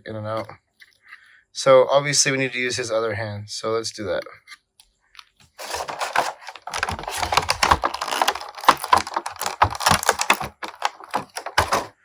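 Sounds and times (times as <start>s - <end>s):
plastic parts clicking: 5.2s - 11.9s.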